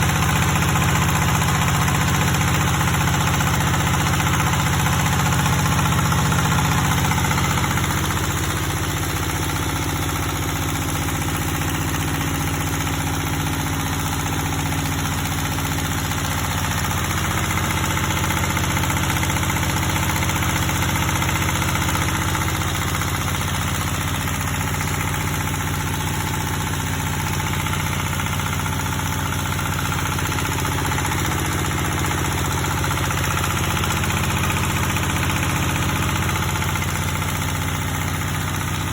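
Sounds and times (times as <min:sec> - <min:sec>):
diesel engine running: 0:00.0 - 0:38.9.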